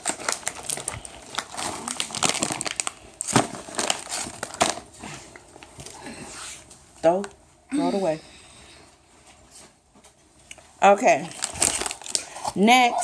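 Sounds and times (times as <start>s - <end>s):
plastic wrapper crinkling: 0.0s - 4.9s, 10.5s - 12.7s.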